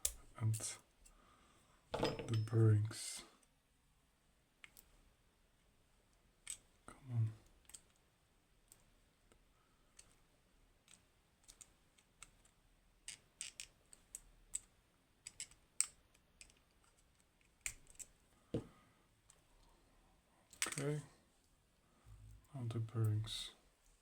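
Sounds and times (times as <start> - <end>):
small metal parts clicking: 10.8 - 18.1.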